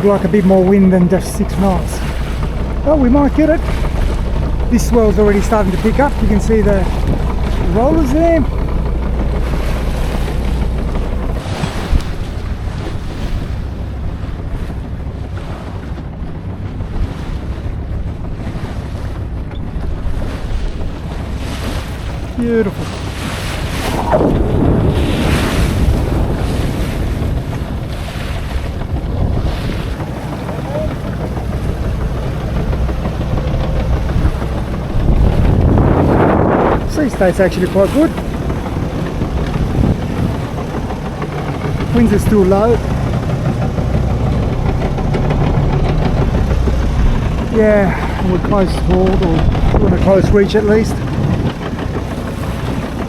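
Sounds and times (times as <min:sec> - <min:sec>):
boat engine running: 0:00.0 - 0:53.0
sea water rushing: 0:00.0 - 0:53.0
wind buffeting microphone: 0:00.0 - 0:53.0.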